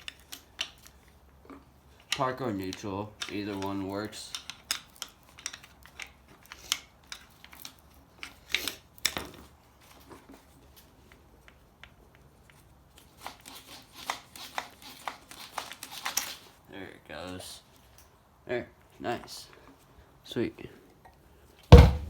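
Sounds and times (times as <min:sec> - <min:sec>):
hand tool clicking on metal: 0:02.0 - 0:08.7
sharp knocks: 0:21.7 - 0:22.0.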